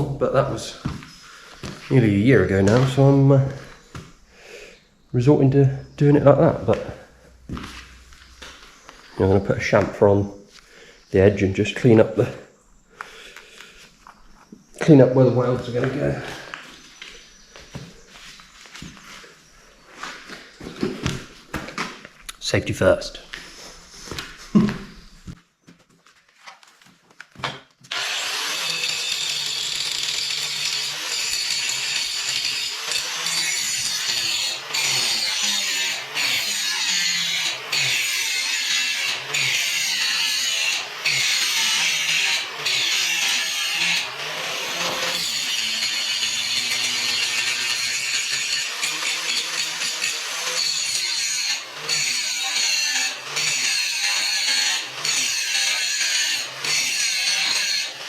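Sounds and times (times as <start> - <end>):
angle grinder grinding steel: 0.0 - 3.9, 14.7 - 18.2, 27.9 - 58.0.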